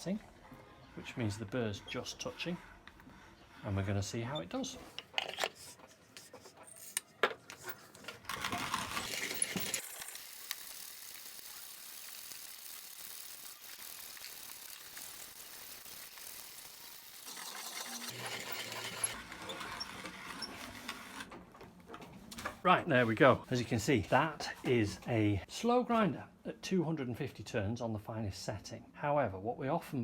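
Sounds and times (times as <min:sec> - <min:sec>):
coffee grinder grinding beans: 0:07.6 - 0:21.3.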